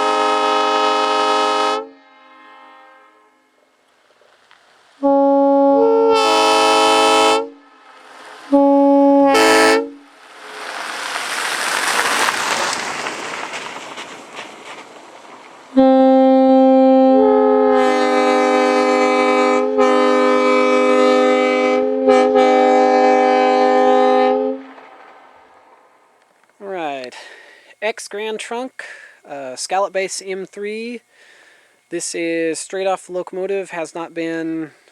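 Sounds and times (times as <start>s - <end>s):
train air horn blasts: 0.0s - 3.7s, 5.0s - 7.8s, 8.4s - 10.1s, 15.7s - 24.8s.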